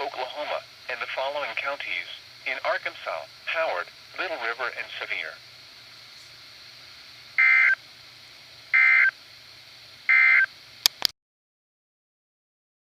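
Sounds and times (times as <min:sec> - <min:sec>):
digital data tone bursts: 0:07.4 - 0:07.8, 0:08.7 - 0:09.2, 0:10.1 - 0:10.5
sharp clicks: 0:10.8 - 0:11.1.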